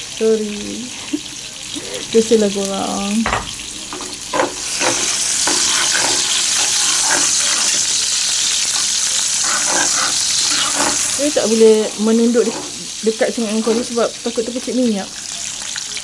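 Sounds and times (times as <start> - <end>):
food sizzling in a wok: 0.0 - 16.0
utensil knocks: 3.2 - 7.9, 11.9 - 12.9.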